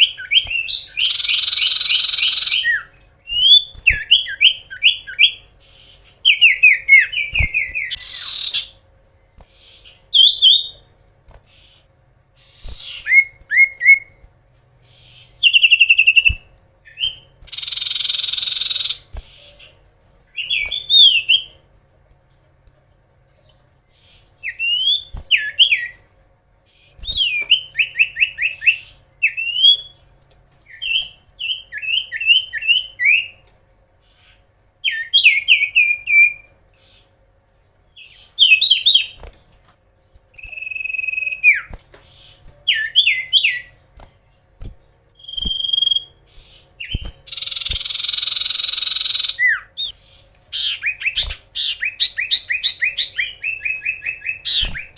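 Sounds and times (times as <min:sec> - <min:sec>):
bird whistled song: 0:00.0 - 0:05.5, 0:06.2 - 0:08.8, 0:09.6 - 0:10.8, 0:12.4 - 0:14.2, 0:15.0 - 0:19.7, 0:20.4 - 0:21.6, 0:24.1 - 0:26.0, 0:26.8 - 0:30.0, 0:30.7 - 0:33.4, 0:34.2 - 0:37.0, 0:38.0 - 0:39.2, 0:40.4 - 0:43.7, 0:45.2 - 0:54.9.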